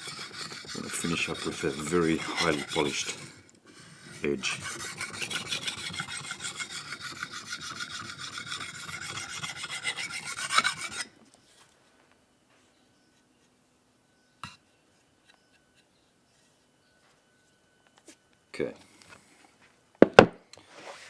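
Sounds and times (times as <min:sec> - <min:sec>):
knife scraping on sharpening hone: 0:00.0 - 0:11.1.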